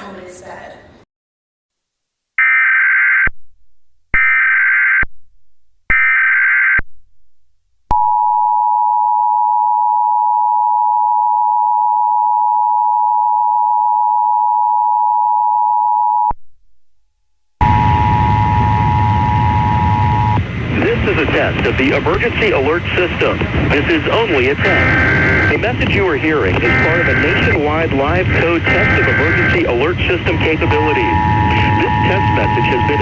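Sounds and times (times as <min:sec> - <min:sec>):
two-tone attention signal: 0:17.6 - 0:20.4, 0:24.6 - 0:25.6, 0:26.6 - 0:33.0
loud harsh noise: 0:17.6 - 0:33.0
screeching digital data tones: 0:26.6 - 0:33.0.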